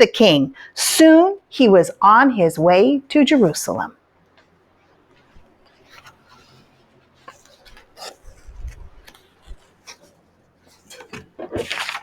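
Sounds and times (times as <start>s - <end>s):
objects clicking and rustling: 7.2s - 12.0s.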